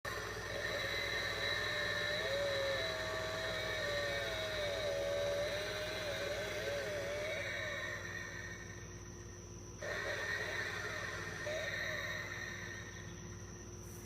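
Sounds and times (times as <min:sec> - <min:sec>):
small chainsaw motor whirring: 0:00.1 - 0:08.1.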